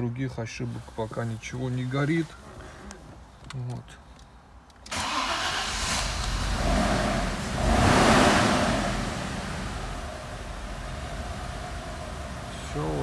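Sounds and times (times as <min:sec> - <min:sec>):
car engine idling rough: 0:05.0 - 0:13.0.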